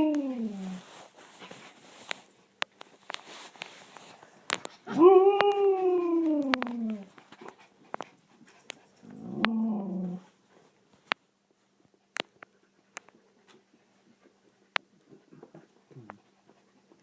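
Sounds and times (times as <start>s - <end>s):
dog howling: 4.9s - 7.1s, 9.1s - 10.3s.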